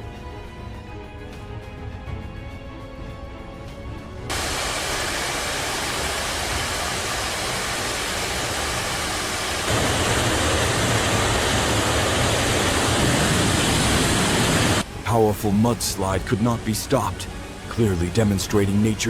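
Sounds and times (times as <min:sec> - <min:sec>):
mudslide torrent rushing: 0:04.3 - 0:18.8
deep rumble: 0:05.5 - 0:14.8.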